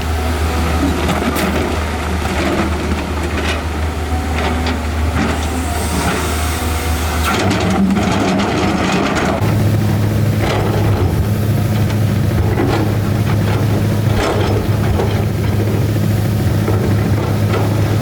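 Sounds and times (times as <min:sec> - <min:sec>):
excavator diesel engine under load: 0:00.0 - 0:18.0
machine knocks and clanks: 0:07.2 - 0:09.5, 0:10.4 - 0:18.0.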